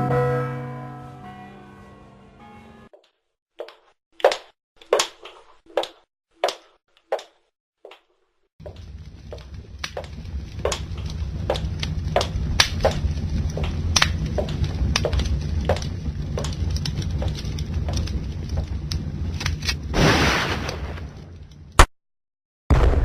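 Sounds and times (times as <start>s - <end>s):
steady low rumble: 8.6s - 20.0s.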